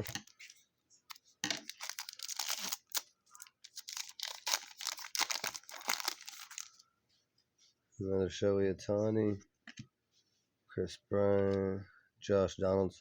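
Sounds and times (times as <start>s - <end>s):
foil wrapper crinkling and tearing: 1.5s - 6.8s.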